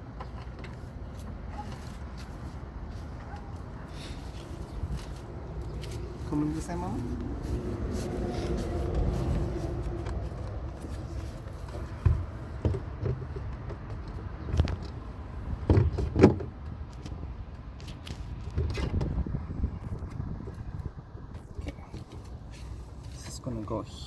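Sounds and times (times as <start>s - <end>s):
steady low rumble: 2.0s - 12.6s.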